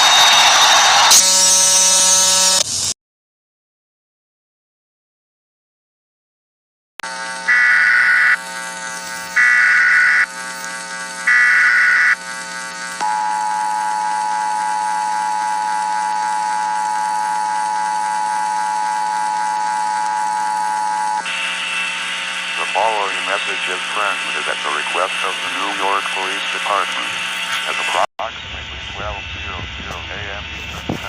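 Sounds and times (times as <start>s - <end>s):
faint steady buzz: 7.0s - 27.8s
warbling data bursts: 7.2s - 13.0s.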